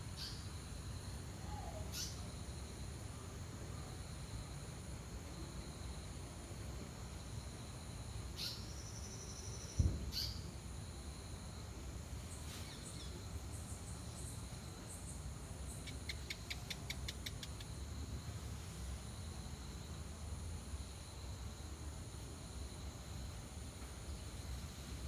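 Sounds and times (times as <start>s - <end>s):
high insect drone: 0.0s - 25.0s
low thump: 9.8s - 10.1s.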